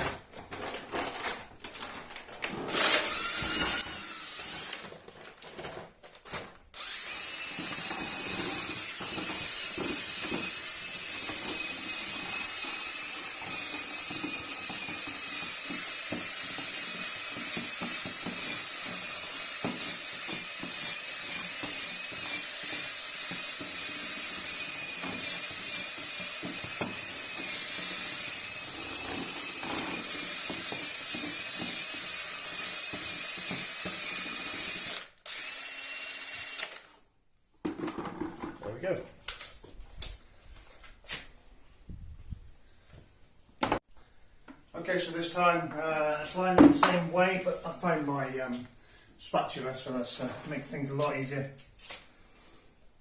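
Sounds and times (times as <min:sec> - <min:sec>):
electric paddle mixer whining: 0:02.7 - 0:04.8, 0:06.8 - 0:36.8.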